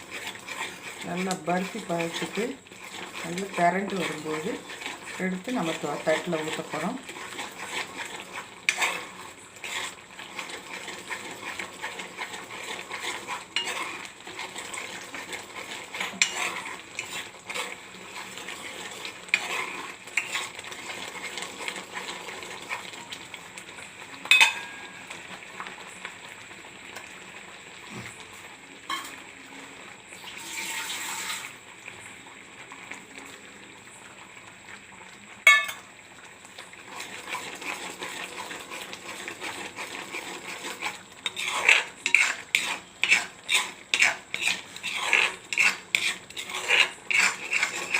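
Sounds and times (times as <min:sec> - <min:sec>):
spoon stirring and scraping pan: 0:00.0 - 0:26.0, 0:27.8 - 0:29.4, 0:35.4 - 0:47.9
spoon clinks against pan: 0:24.3 - 0:24.8, 0:35.5 - 0:35.8.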